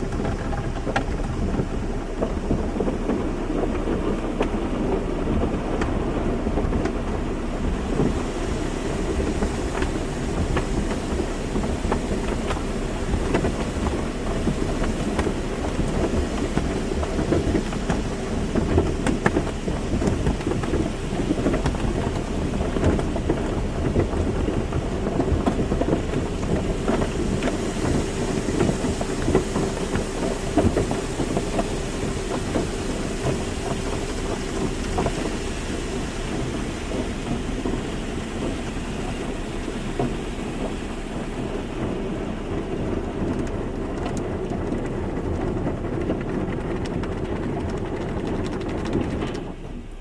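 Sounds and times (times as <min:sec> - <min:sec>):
steady machine hum: 0:00.0 - 0:50.0
water jets spraying on car: 0:00.0 - 0:50.0.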